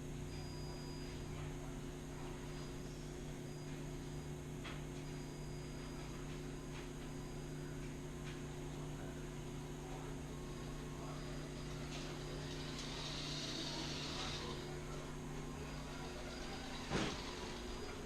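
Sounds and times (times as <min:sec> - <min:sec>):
thin high whine: 0:00.0 - 0:08.4, 0:09.0 - 0:18.0
toy truck drivetrain running: 0:11.9 - 0:14.6.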